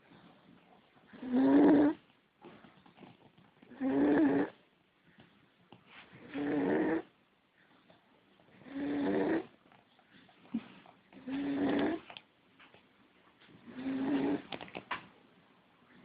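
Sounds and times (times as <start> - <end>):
snoring: 1.1 - 2.0, 3.7 - 4.6, 6.2 - 7.1, 8.6 - 9.6, 11.2 - 12.1, 13.6 - 14.6.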